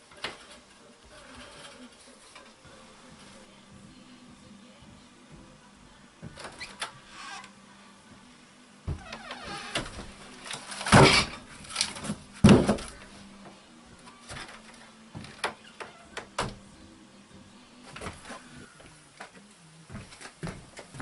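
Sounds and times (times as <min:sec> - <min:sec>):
faint steady hum: 0:00.0 - 0:21.0
knocks and clunks of handling: 0:08.9 - 0:13.1.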